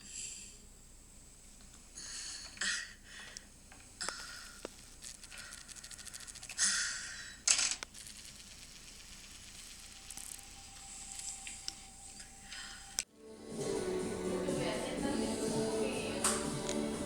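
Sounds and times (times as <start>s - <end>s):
small clicks: 3.3s - 6.7s, 7.4s - 11.8s.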